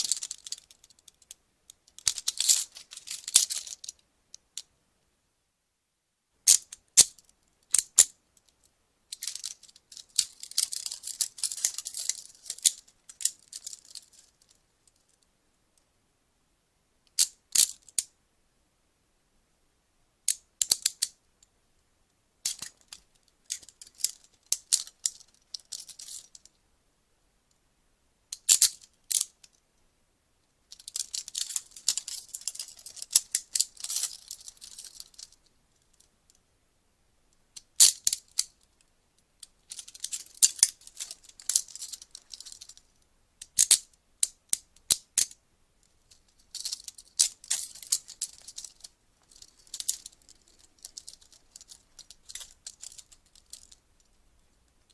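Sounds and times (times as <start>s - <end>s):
handcuffs ratcheting and clicking: 0.0s - 1.4s, 2.0s - 4.0s, 9.1s - 14.4s, 22.5s - 26.4s, 30.8s - 35.4s, 37.6s - 38.5s, 39.7s - 42.8s, 43.4s - 45.4s, 46.2s - 53.8s.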